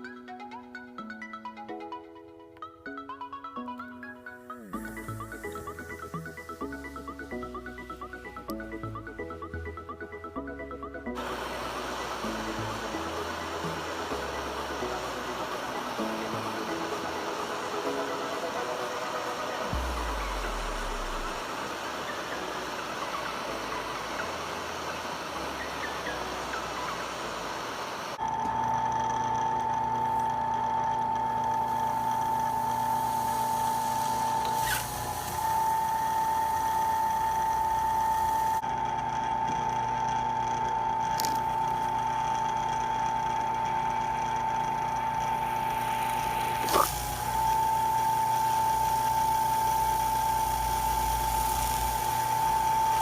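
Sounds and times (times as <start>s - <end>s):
rough hissing noise: 4.5s - 9.4s, 11.2s - 28.2s, 31.7s - 38.6s, 45.6s - 53.0s
electric drill motor whining: 11.2s - 53.0s.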